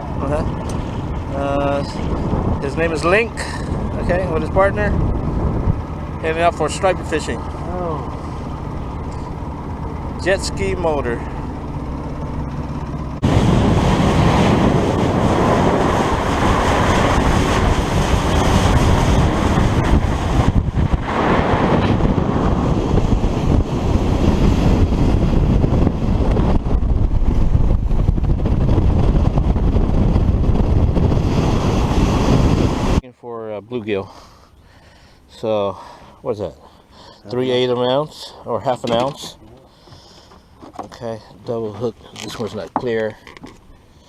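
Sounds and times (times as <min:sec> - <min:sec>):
water noise from speeding boat: 0:00.0 - 0:33.0, 0:38.7 - 0:41.0
wind buffeting microphone: 0:00.0 - 0:33.0.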